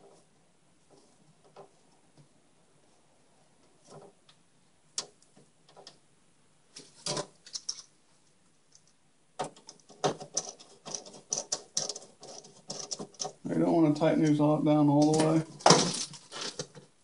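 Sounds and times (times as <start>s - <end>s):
metal screws clicking and rattling: 7.0s - 7.9s, 8.7s - 13.4s.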